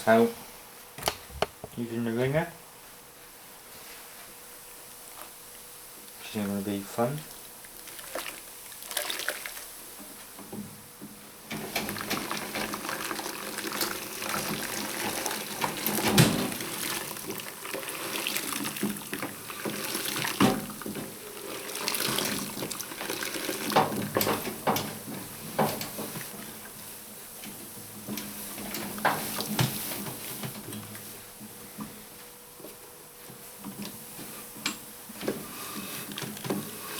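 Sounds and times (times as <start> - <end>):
water pouring and splashing: 7.2 - 9.8, 11.6 - 24.7
wringer rollers knocking: 10.5 - 26.6.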